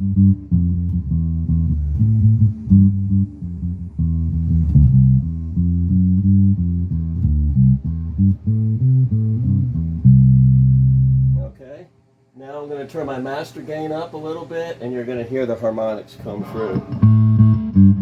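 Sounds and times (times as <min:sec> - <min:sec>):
electric bass riff: 0:00.0 - 0:11.6, 0:16.5 - 0:18.0.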